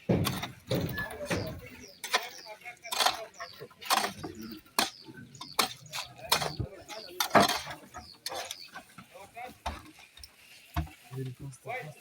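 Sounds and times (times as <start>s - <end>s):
rope pulley squeaking and knocking: 0.0s - 4.9s.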